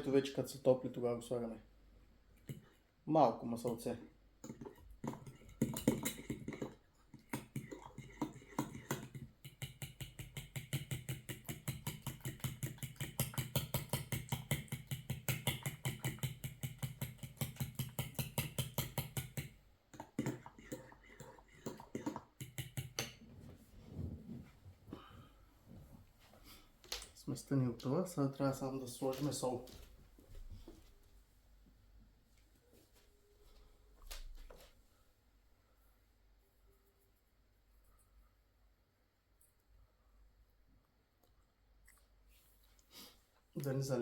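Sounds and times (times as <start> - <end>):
whisk stirring sauce in a pot: 4.4 - 23.2.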